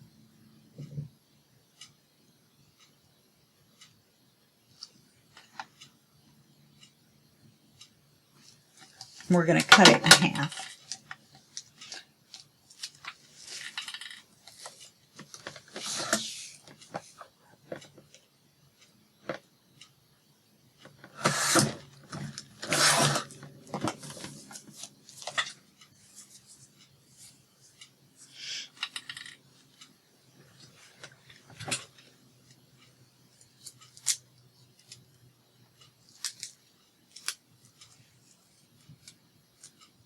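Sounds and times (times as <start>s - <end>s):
paper scraping and rustling: 21.2s - 25.3s.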